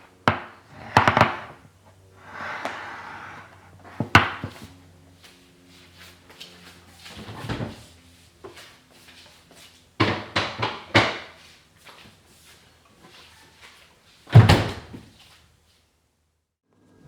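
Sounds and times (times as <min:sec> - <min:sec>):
knocks and clunks in kitchen: 0:00.1 - 0:01.7, 0:02.4 - 0:04.7, 0:07.2 - 0:07.8, 0:10.0 - 0:11.4, 0:14.3 - 0:15.2.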